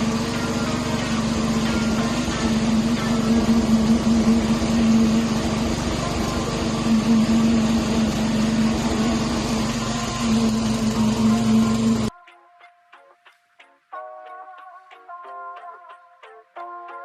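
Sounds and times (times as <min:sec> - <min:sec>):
small engine running: 0:00.0 - 0:12.1.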